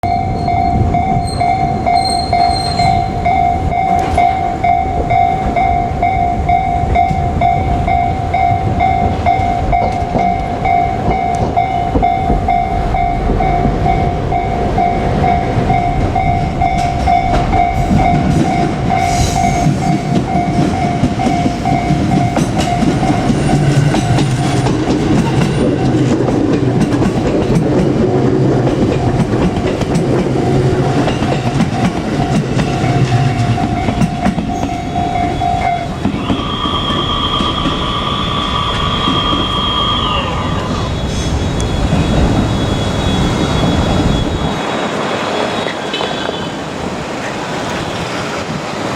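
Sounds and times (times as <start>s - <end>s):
level crossing bell ringing: 0.0s - 23.2s, 31.6s - 36.1s
electric train rumble and clatter: 0.0s - 48.9s.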